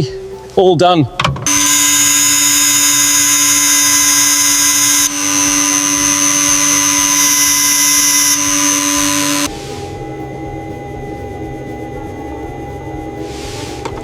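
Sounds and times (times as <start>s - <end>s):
electric power tool whining: 1.4s - 9.5s.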